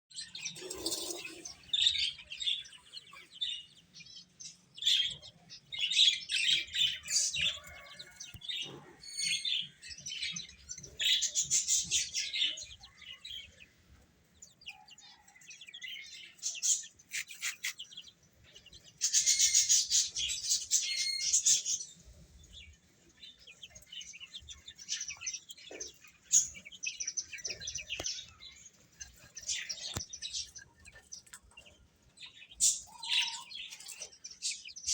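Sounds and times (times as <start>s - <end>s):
chicks peeping: 0.1s - 34.9s.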